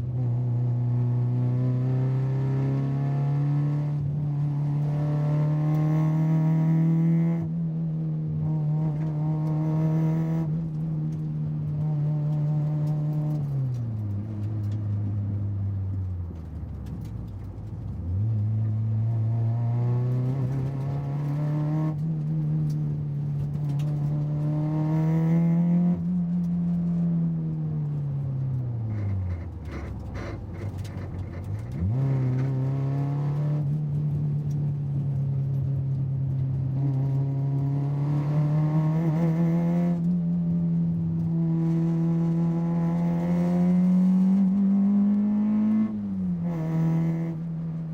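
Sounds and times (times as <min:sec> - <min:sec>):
car engine running: 0:25.8 - 0:44.6.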